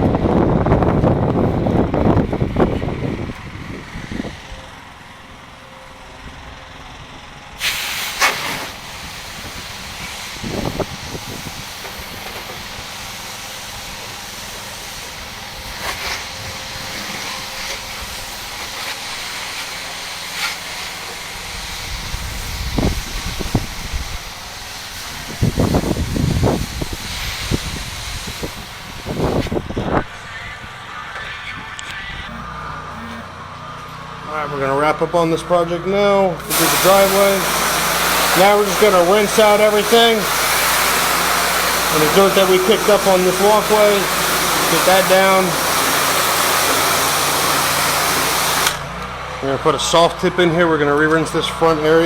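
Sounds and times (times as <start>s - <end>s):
wind rumbling on microphone: 0.0s - 4.5s, 9.0s - 12.2s, 21.8s - 24.3s, 25.1s - 30.7s
pressure washer spray hissing: 7.6s - 29.6s, 36.4s - 49.0s.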